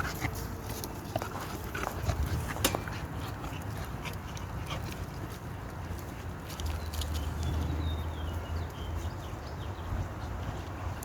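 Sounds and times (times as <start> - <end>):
dog claws clicking and scuffing: 0.0 - 7.6.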